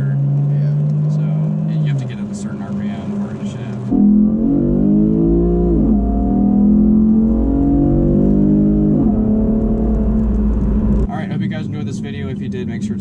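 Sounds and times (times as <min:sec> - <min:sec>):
car engine accelerating hard: 0:00.0 - 0:13.0.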